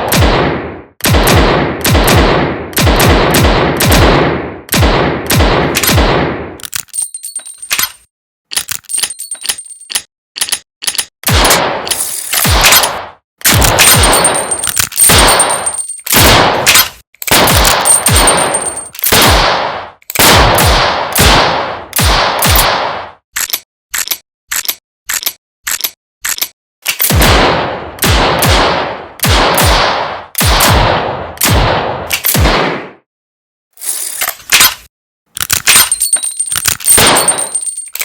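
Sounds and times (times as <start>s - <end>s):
revolver gunshots: 0.0s - 6.6s, 11.2s - 23.2s, 27.0s - 33.0s, 36.9s - 37.7s.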